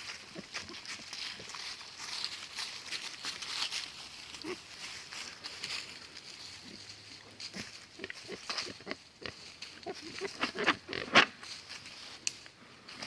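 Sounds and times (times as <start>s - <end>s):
pigs grunting and snuffling: 0.0s - 1.8s, 4.0s - 5.8s, 6.4s - 11.4s.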